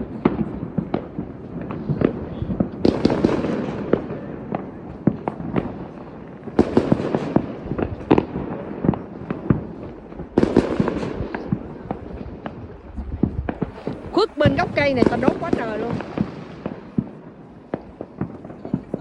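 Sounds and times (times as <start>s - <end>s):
fireworks bangs and pops: 0.0s - 19.0s
fireworks crackling: 0.0s - 19.0s.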